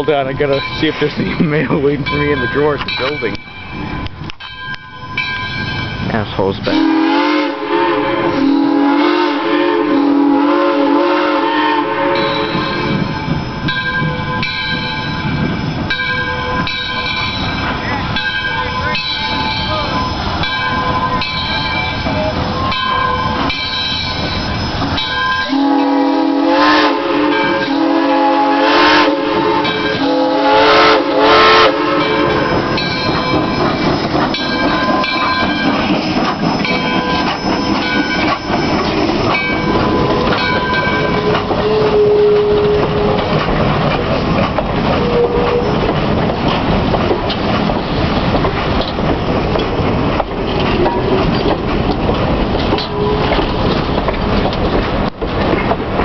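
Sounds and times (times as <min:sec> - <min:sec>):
train wheels rumbling and clattering: 0:00.0 - 0:56.0
steam locomotive whistle: 0:06.6 - 0:14.5, 0:18.6 - 0:33.6, 0:34.4 - 0:43.4, 0:44.9 - 0:45.9, 0:52.8 - 0:53.4.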